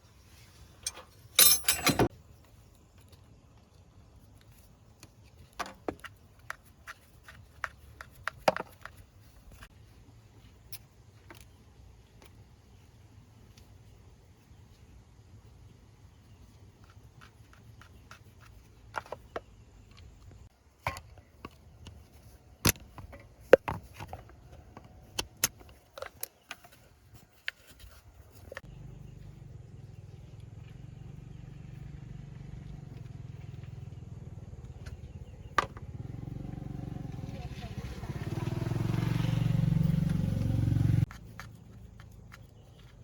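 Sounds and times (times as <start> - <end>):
metal knocks and clanks: 0.8 - 2.1.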